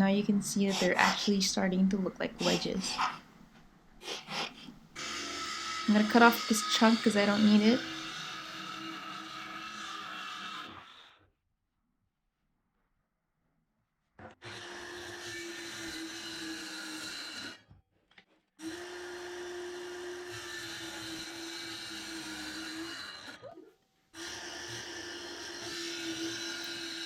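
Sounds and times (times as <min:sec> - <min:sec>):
circular saw cutting board: 0:04.0 - 0:11.2, 0:14.2 - 0:17.6, 0:18.6 - 0:23.5, 0:24.1 - 0:27.0.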